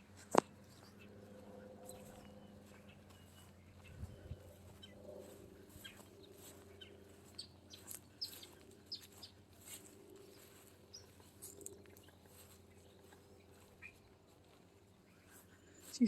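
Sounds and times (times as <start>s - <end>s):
birds chirping: 0.0s - 16.0s
faint low hum: 0.0s - 16.0s.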